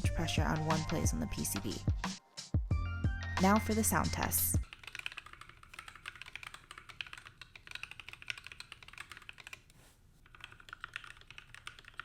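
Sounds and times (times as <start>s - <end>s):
mechanical keyboard typing: 4.6s - 12.0s.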